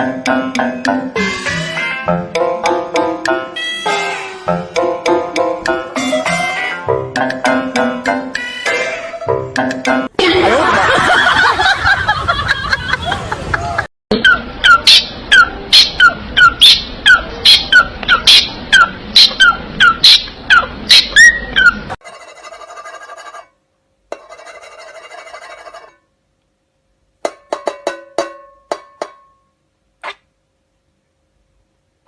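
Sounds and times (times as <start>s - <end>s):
sharp plucked notes: 0.0s - 10.1s
parrot calling: 8.4s - 9.3s, 14.1s - 22.0s.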